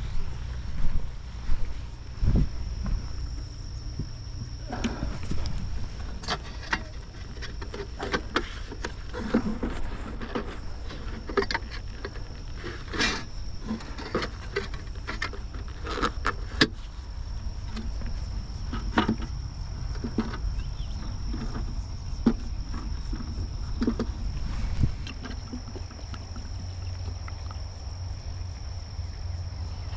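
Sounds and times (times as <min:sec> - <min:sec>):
low rumble: 0:00.0 - 0:06.6
wooden boxes knocking and scraping: 0:18.5 - 0:26.8.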